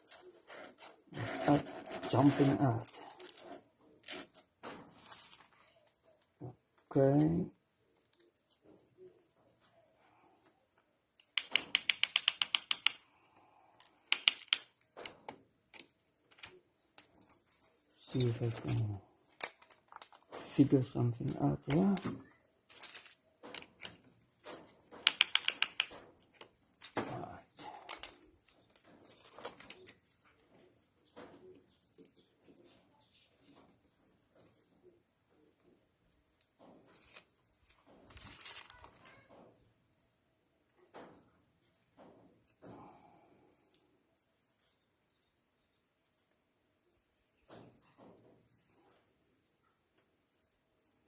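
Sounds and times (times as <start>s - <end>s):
faint handling noise: 0.0s - 10.9s, 13.8s - 34.9s, 35.6s - 39.6s.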